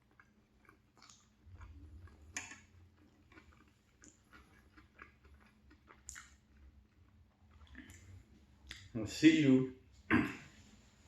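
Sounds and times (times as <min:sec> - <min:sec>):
person chewing food: 0:00.0 - 0:08.9
wet mouth smacks: 0:00.6 - 0:06.4, 0:07.6 - 0:08.9.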